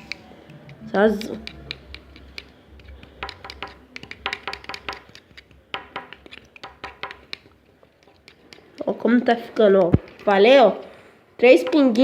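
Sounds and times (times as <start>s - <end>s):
spoon tapping against pot: 3.2s - 5.2s.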